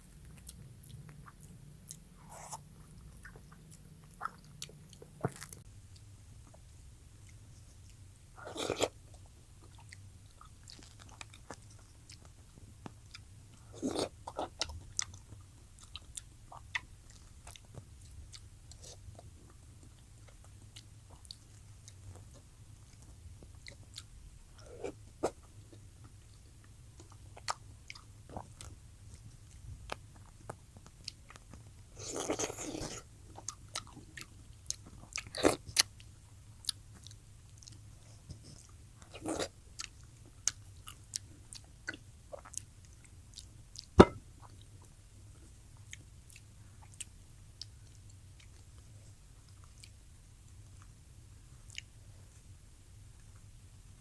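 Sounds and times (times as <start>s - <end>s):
person chewing and biting: 0.3s - 5.6s, 8.4s - 9.0s, 32.0s - 35.9s, 38.4s - 42.6s.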